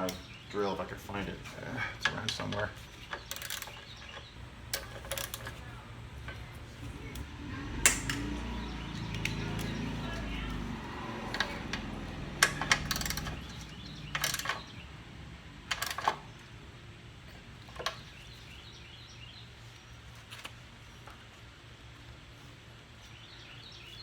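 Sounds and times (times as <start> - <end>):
metal tools clinking: 1.4 - 6.5, 11.3 - 14.7.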